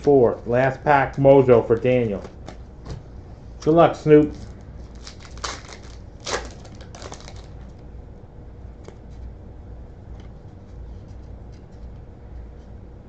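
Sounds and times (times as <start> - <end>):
foil pack tearing: 4.4 - 7.6.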